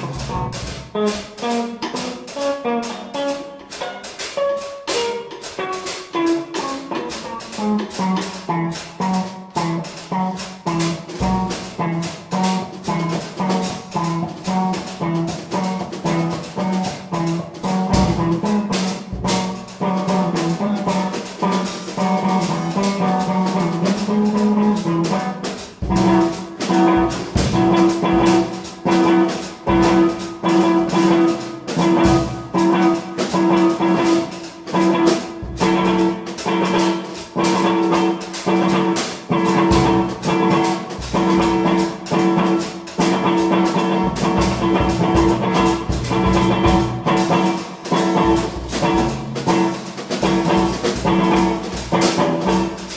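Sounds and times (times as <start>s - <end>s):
drum kit beat: 0.0s - 52.9s
electric guitar playing: 0.0s - 52.9s.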